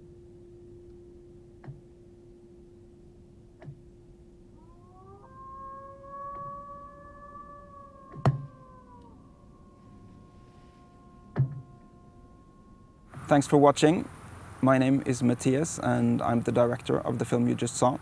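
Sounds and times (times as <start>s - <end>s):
long held musical tones: 8.9s - 18.0s.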